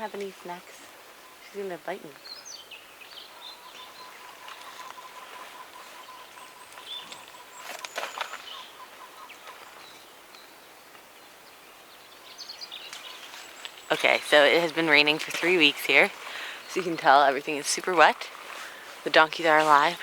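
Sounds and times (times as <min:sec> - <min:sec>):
faint bird chirps: 0:00.0 - 0:17.1.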